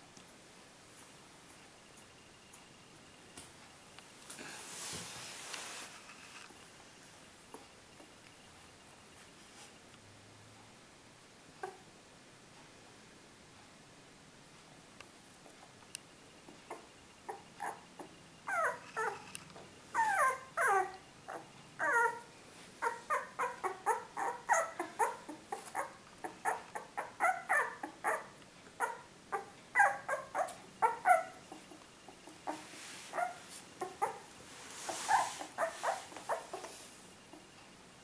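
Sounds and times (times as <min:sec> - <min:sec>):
puppy whining and yelping: 0:16.7 - 0:19.3, 0:19.9 - 0:37.4.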